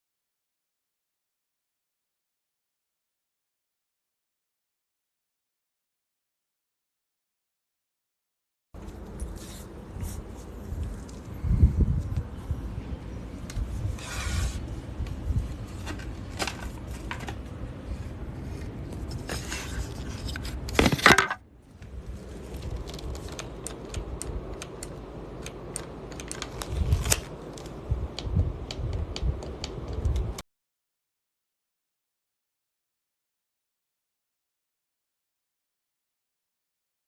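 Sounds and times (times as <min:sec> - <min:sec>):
hard objects clicking and scraping: 0:18.6 - 0:21.4.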